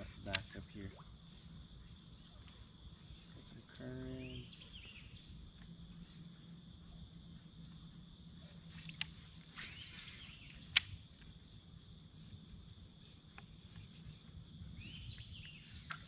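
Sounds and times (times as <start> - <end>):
insects trilling: 0.0 - 16.0.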